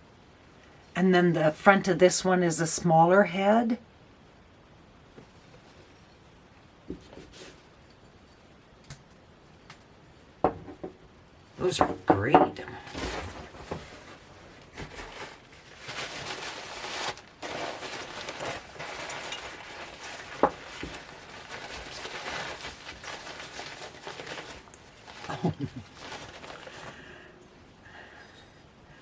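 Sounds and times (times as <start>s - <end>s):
packing paper rustling: 12.8s - 27.2s.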